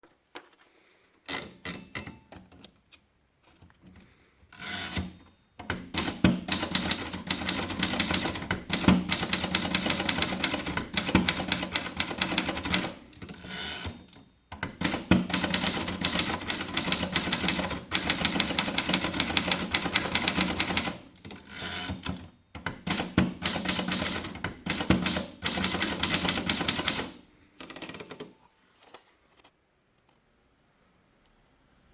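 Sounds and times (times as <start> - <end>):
typewriter keystrokes: 4.6 - 28.3.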